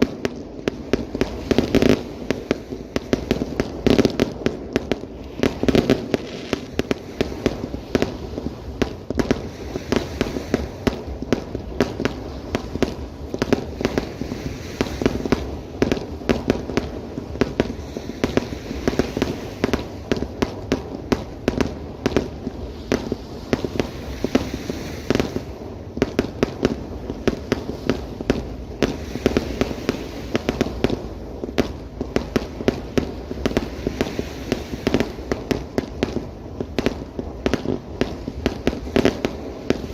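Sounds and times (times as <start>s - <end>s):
firework bursts and bangs: 0.0s - 39.9s
low rumble of explosions: 0.0s - 39.9s.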